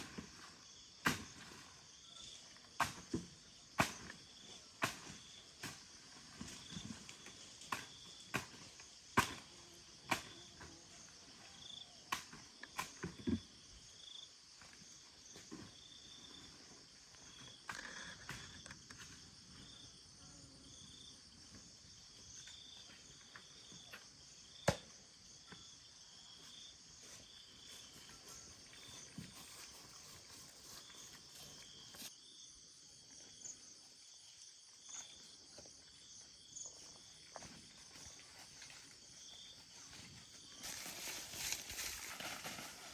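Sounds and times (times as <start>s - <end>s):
insects chirping: 0.0s - 42.9s.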